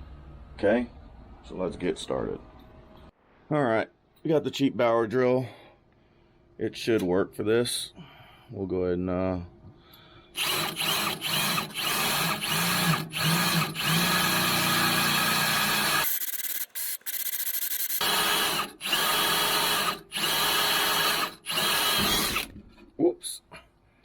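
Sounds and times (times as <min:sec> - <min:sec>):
power drill boring: 0:10.4 - 0:22.6.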